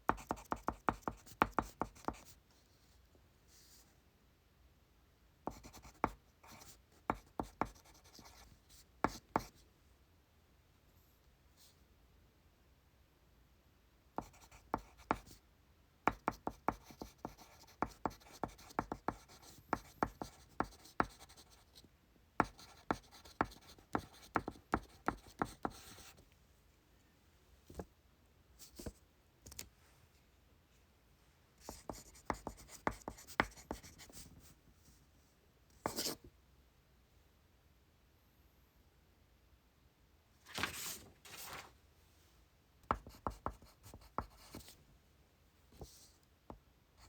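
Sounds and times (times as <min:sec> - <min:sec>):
pencil writing on paper: 0:00.1 - 0:02.3, 0:05.5 - 0:08.5, 0:14.2 - 0:15.4, 0:16.1 - 0:21.7, 0:22.4 - 0:26.2, 0:31.6 - 0:34.3, 0:35.9 - 0:36.2, 0:42.9 - 0:44.7.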